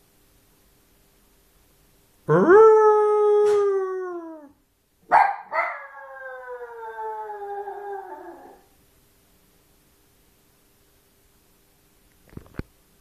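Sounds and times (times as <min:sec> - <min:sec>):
puppy whining howls: 0:02.3 - 0:04.6, 0:05.4 - 0:08.7
puppy yelps: 0:05.1 - 0:06.0.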